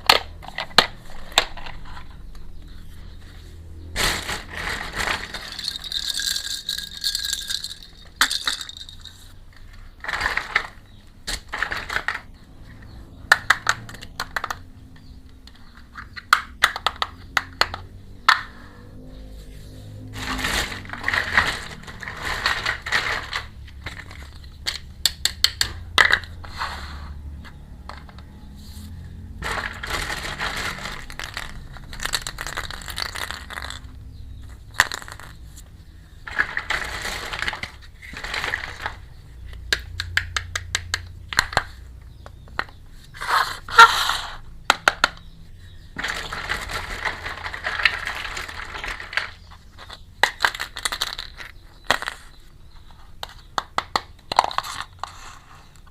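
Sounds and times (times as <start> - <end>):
plastic toy pieces clattering: 0.0 - 2.4, 4.0 - 12.4, 13.3 - 18.6, 20.1 - 26.5, 29.2 - 41.8, 42.5 - 45.3, 45.9 - 55.9
plastic packaging crinkling: 3.8 - 9.3, 20.1 - 24.7, 29.1 - 34.0, 36.3 - 39.2, 46.0 - 52.3.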